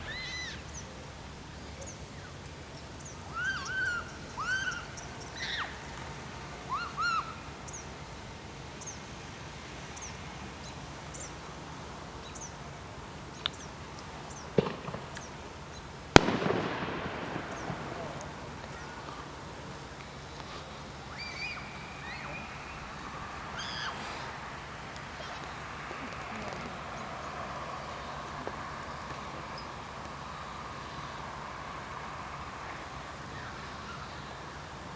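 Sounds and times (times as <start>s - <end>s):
birds calling: 0.0s - 34.9s
sharp pops: 13.4s - 15.5s, 16.1s - 20.8s
firework bang with echo: 14.6s - 15.2s, 16.1s - 19.2s.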